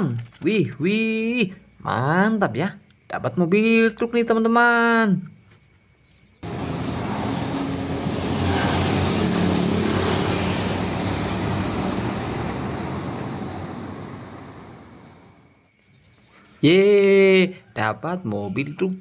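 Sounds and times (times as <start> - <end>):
motor drone with rushing noise: 6.4 - 15.4.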